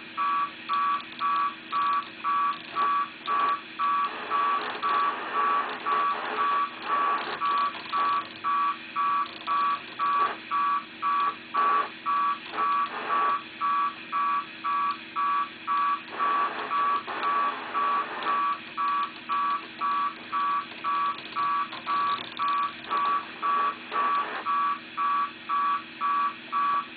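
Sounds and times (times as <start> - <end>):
pulsing radio beeping tone: 0.2 - 26.9
radio background hiss: 2.8 - 7.4, 11.3 - 13.5, 16.0 - 18.6, 22.9 - 24.5.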